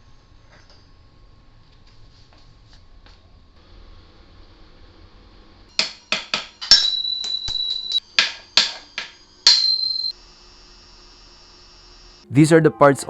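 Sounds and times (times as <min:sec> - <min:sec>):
hammer striking metal: 0:05.7 - 0:10.1.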